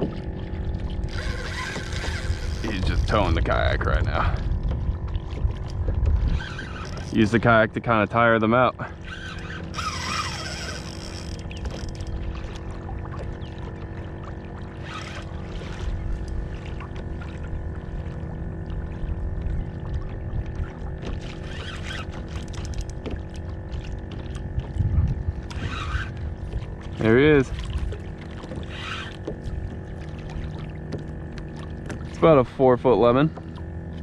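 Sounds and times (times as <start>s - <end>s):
water splashing against kayak hull: 0.0s - 34.0s
steady low rumble: 2.1s - 6.5s, 7.1s - 9.1s, 11.1s - 21.4s, 22.5s - 28.5s.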